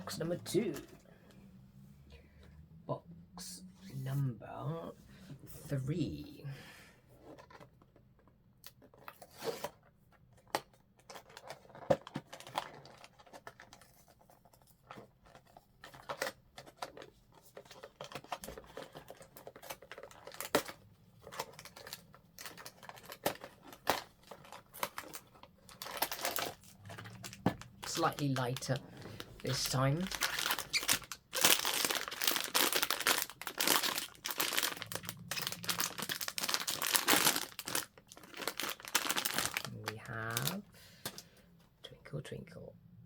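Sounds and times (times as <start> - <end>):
packaging tearing and snapping: 10.4 - 13.8, 15.8 - 28.7, 29.4 - 40.6
plastic bag rustling: 21.2 - 41.2.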